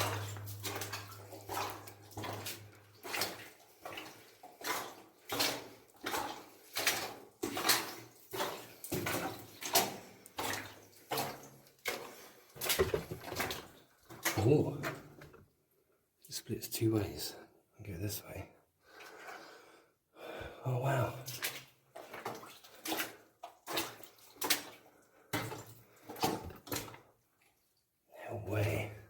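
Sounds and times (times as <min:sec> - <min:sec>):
low hum: 0:00.0 - 0:02.8
footsteps splashing through water: 0:00.0 - 0:15.2, 0:21.3 - 0:27.0.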